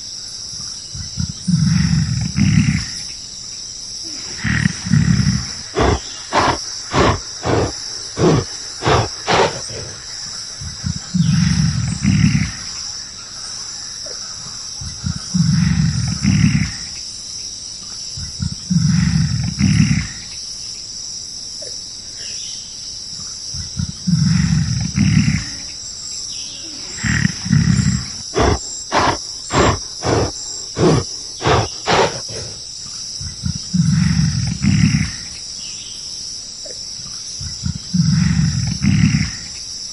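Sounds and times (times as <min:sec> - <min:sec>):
insect drone: 0:00.0 - 0:39.9
rhythmic animal grunts: 0:01.0 - 0:03.2, 0:04.1 - 0:12.9, 0:14.8 - 0:17.0, 0:18.2 - 0:20.3, 0:23.6 - 0:25.7, 0:26.8 - 0:35.4, 0:37.4 - 0:39.6
animal roaring: 0:04.1 - 0:10.0, 0:26.8 - 0:32.6.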